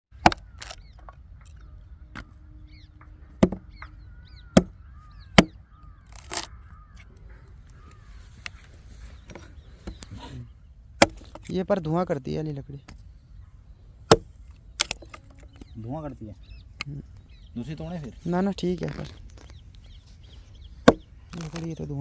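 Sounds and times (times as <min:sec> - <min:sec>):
birds chirping: 0:00.1 - 0:22.0
firewood being chopped: 0:00.2 - 0:02.3, 0:03.0 - 0:06.9, 0:11.0 - 0:11.6, 0:14.0 - 0:15.6, 0:20.8 - 0:21.7.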